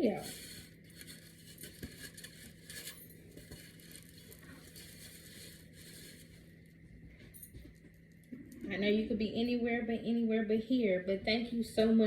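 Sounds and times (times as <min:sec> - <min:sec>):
steady low hum: 0:00.0 - 0:12.0
light clinks and scrapes: 0:00.2 - 0:06.4.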